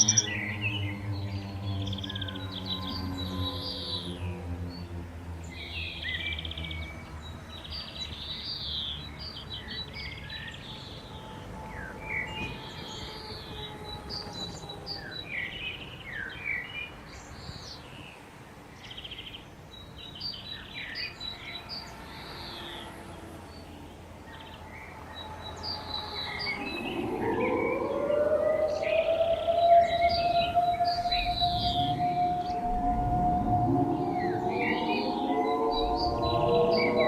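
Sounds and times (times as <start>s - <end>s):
low siren tone: 0.0s - 0.6s, 24.8s - 37.0s
songbirds chirping and trilling: 0.0s - 37.0s.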